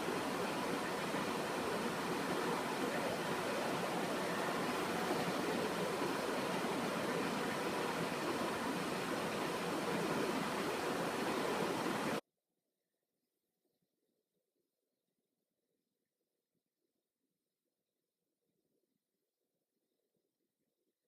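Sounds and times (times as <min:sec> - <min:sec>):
steady hiss-like background noise: 0:00.0 - 0:12.2.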